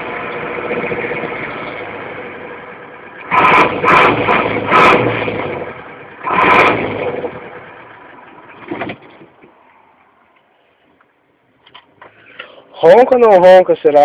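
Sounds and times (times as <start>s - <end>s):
diesel truck engine revving: 0.0s - 9.3s.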